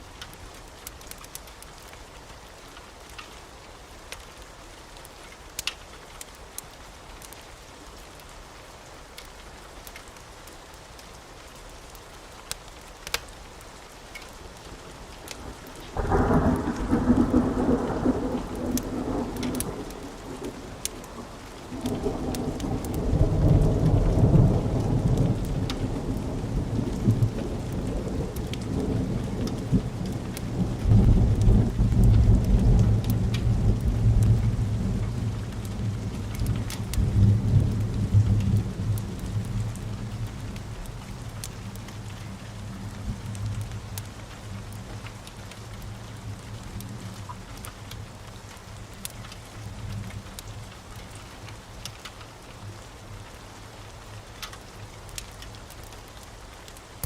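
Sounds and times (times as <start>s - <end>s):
steady rain: 0.0s - 57.0s
thunder rumbling: 15.3s - 41.8s.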